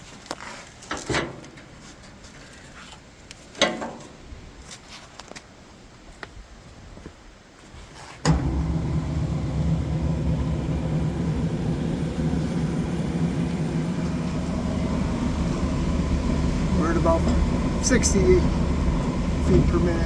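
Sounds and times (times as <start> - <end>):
bandsaw motor humming: 8.3 - 20.0.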